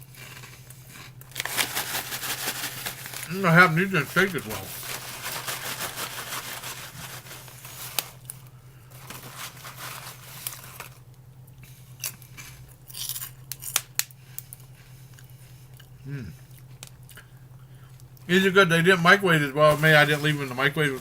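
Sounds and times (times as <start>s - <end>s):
pork rinds rustling and crunching: 0.0s - 16.0s.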